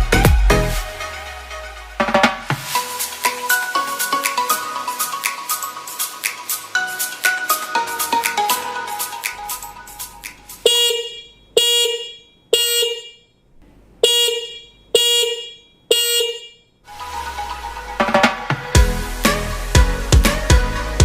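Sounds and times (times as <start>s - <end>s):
background music with a beat: 0.0s - 10.7s, 16.9s - 21.0s
motorcycle horn honks: 10.6s - 13.3s, 14.0s - 16.6s.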